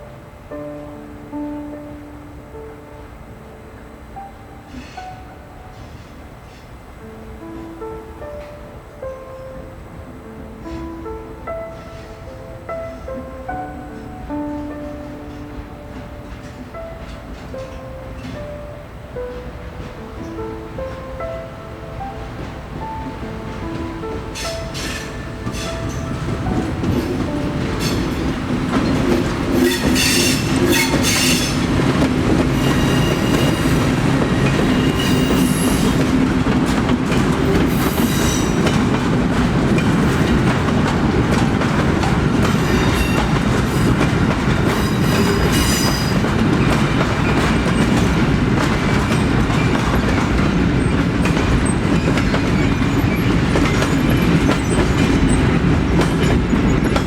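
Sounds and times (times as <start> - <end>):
freight train rumbling by: 9.6 - 57.0
wheels clacking over rails: 23.7 - 57.0
train wheels squealing: 28.8 - 31.6, 32.5 - 36.0, 44.7 - 47.4.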